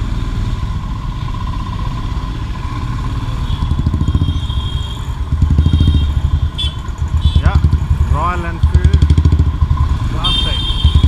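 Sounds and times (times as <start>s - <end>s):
motorcycle engine thumping: 3.6s - 11.0s.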